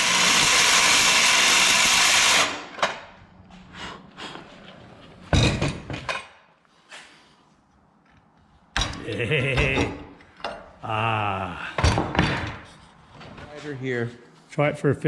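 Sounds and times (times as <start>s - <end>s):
power saw cutting metal: 0.0s - 2.8s.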